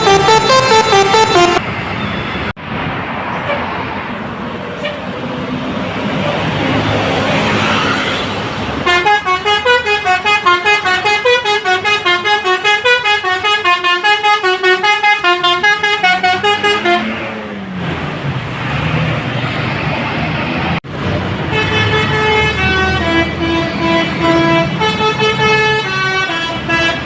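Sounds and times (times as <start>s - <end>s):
bus air horns playing a tune: 0.0s - 1.6s, 8.8s - 17.2s, 21.5s - 27.0s
bus engine: 0.0s - 27.0s
road traffic: 0.0s - 27.0s.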